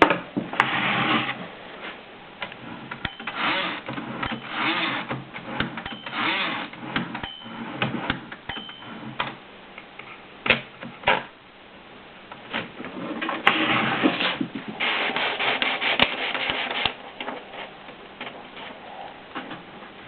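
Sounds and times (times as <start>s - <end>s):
rasping sliding sounds: 0.6s - 2.0s, 13.0s - 17.8s.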